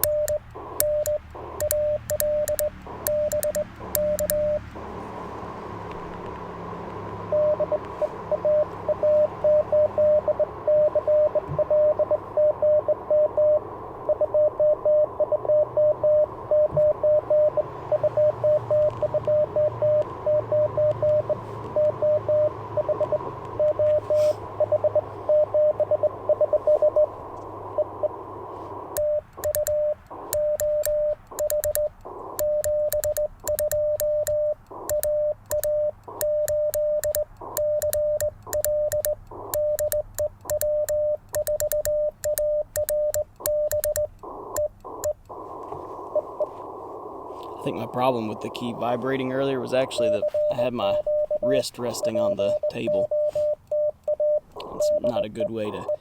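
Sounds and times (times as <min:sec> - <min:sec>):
radio band hiss: 0:00.0 - 0:02.1, 0:26.6 - 0:29.0, 0:44.2 - 0:53.6, 0:54.6 - 0:56.0
morse key contacts clicking: 0:00.0 - 0:04.7, 0:29.0 - 0:45.4
morse code tone: 0:00.0 - 0:05.0, 0:07.3 - 0:46.5, 0:47.6 - 0:56.0
radio sidetone: 0:00.0 - 0:05.4, 0:07.3 - 0:56.0.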